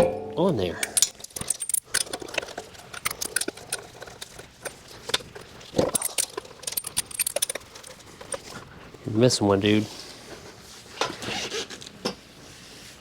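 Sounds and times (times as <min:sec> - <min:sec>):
metal lug nuts clinking: 0:00.8 - 0:08.5.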